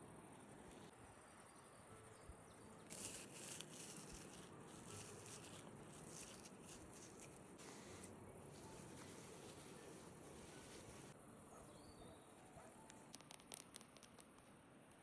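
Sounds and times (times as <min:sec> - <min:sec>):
moss crunching: 0:02.9 - 0:11.2.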